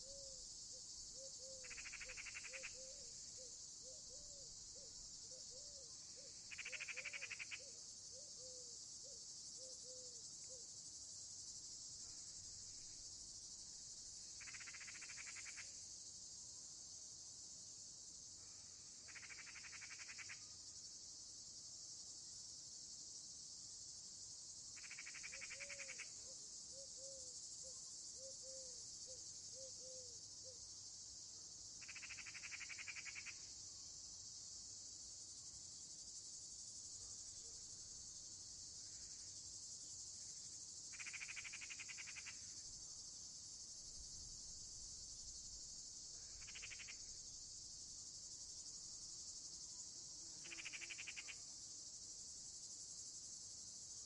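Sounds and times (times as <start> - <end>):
pulsed insect trill: 0.0 - 5.8, 6.4 - 8.6, 14.2 - 16.0, 18.7 - 20.9, 24.7 - 27.2, 31.8 - 36.9, 37.8 - 54.0
crickets shrilling: 37.7 - 54.0.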